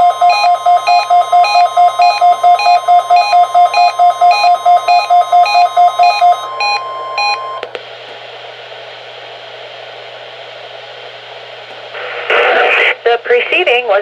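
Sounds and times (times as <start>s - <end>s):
rapid beeping: 0.0s - 7.6s
steady alarm tone: 0.0s - 7.6s
radio static hiss: 11.8s - 14.0s.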